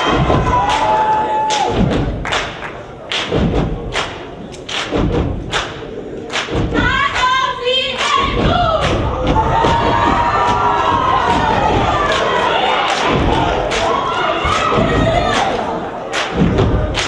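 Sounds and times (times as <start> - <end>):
rhythmic stomping and clapping: 0.0 - 17.0
voices chanting: 6.8 - 17.0.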